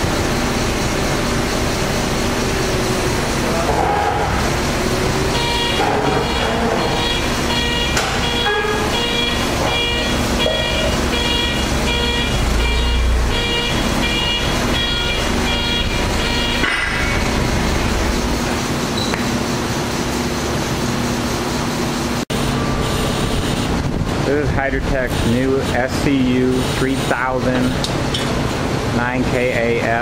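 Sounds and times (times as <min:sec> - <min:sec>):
loud machinery hum: 0:00.0 - 0:30.0
high electronic beeps: 0:05.2 - 0:17.5.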